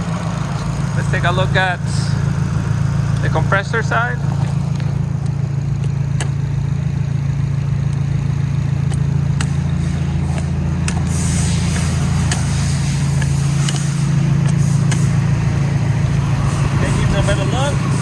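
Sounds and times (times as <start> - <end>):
car engine idling: 0.0 - 18.0
light engine ticks: 4.3 - 11.1, 11.8 - 12.5, 13.2 - 15.4
high hiss: 9.8 - 18.0.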